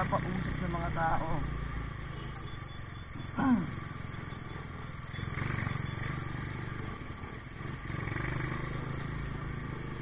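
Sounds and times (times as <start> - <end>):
vehicle engines rumbling in traffic: 0.0 - 10.0.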